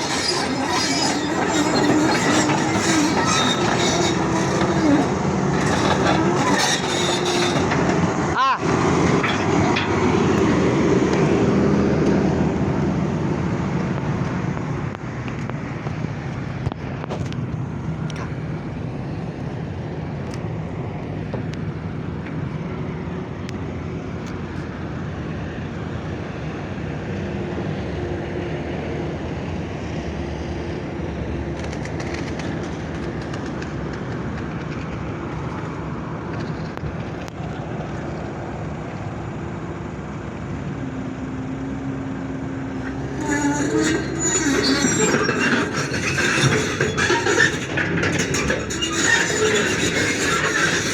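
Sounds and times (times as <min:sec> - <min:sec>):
heavy machinery engine droning: 0:00.0 - 0:14.9, 0:41.7 - 0:50.9.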